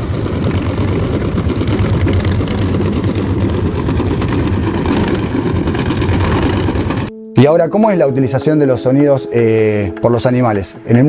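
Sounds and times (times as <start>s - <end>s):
underwater ship engine drone: 0.0s - 7.1s.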